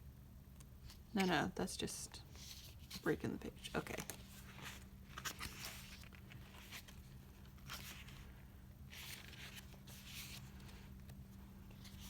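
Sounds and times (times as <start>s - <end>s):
low steady hum: 0.0s - 12.0s
paper pages rustling: 2.3s - 12.0s.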